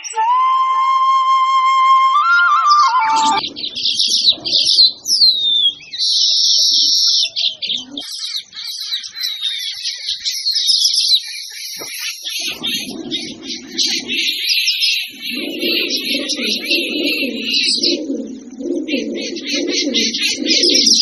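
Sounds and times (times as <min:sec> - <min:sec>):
flute-like music tone: 0:00.0 - 0:03.4
downward-sliding bird call: 0:00.0 - 0:03.5, 0:12.5 - 0:18.0
birds chirping and trilling: 0:01.8 - 0:21.0.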